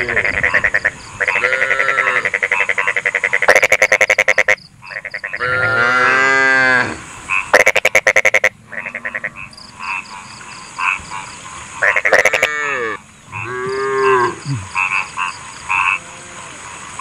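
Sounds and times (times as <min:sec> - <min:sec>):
frogs croaking: 0:00.0 - 0:17.0
cow mooing: 0:01.3 - 0:02.3, 0:05.4 - 0:07.0, 0:08.7 - 0:09.5, 0:12.3 - 0:14.7.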